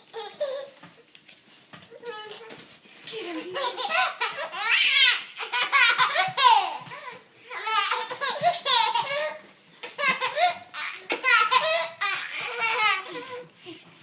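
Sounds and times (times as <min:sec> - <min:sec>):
baby laughing: 0:00.0 - 0:00.8, 0:03.4 - 0:13.4.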